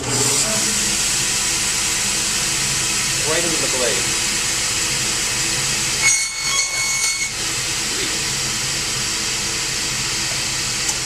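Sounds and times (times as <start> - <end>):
table saw running: 0.0 - 11.0
thin high whine: 1.5 - 9.5.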